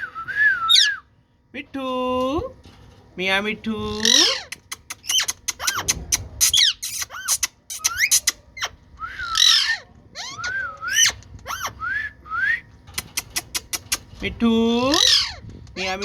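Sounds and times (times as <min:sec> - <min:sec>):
parakeet chirps and squawks: 0:04.0 - 0:11.8, 0:14.9 - 0:16.0
sharp clicks: 0:04.5 - 0:06.3, 0:12.8 - 0:14.1.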